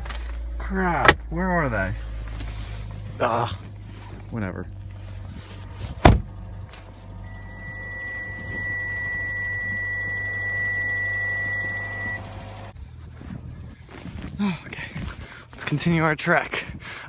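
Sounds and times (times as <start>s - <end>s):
car engine idling: 0.0s - 13.6s
loud thump: 5.9s - 6.4s
high electronic tone: 7.1s - 12.7s.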